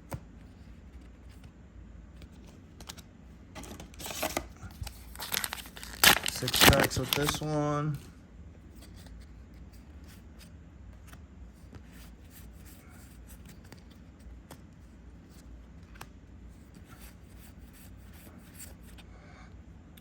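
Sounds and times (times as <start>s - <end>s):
low room hum: 0.0s - 20.0s
cards clicking and rubbing: 3.6s - 7.6s.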